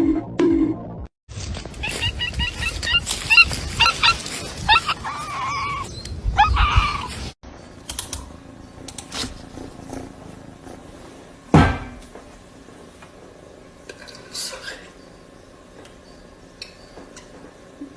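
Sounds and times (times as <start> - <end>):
short pitched animal calls: 1.8 - 7.3
loud thump: 11.5 - 12.0.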